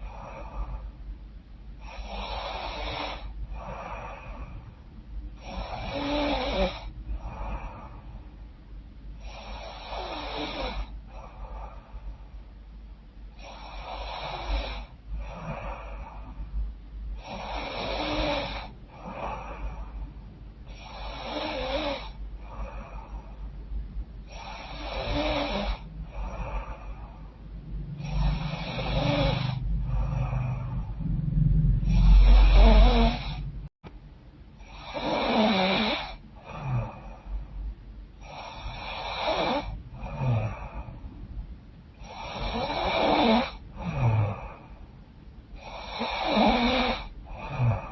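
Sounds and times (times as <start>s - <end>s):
woman snoring through congested nose: 1.8s - 4.5s, 5.4s - 8.0s, 9.2s - 11.8s, 13.4s - 16.3s, 17.2s - 20.0s, 20.7s - 23.3s, 24.3s - 27.2s, 28.0s - 31.1s, 31.8s - 33.5s, 34.6s - 37.2s, 38.2s - 40.9s, 42.0s - 44.8s, 45.6s - 47.9s.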